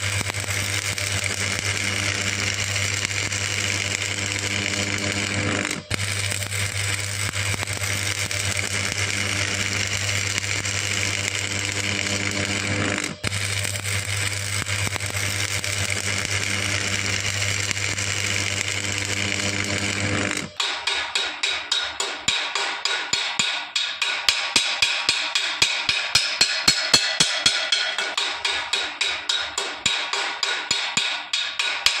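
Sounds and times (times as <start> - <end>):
welding machine hum: 0.0 - 21.4
welding arc crackling: 0.0 - 23.5.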